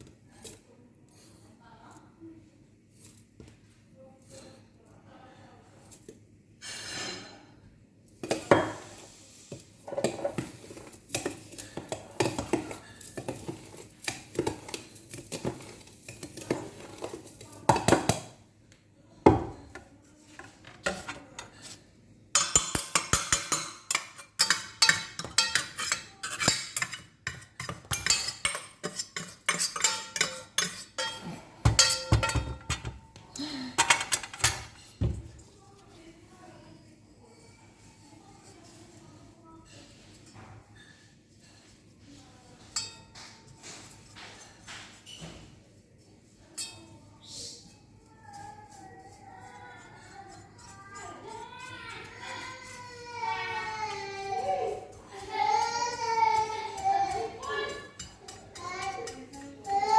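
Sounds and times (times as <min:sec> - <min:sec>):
metal utensils and dishes clinking: 0:06.6 - 0:07.5, 0:08.2 - 0:18.4, 0:19.5 - 0:35.5, 0:39.7 - 0:45.6, 0:46.6 - 0:47.0, 0:48.7 - 0:59.9.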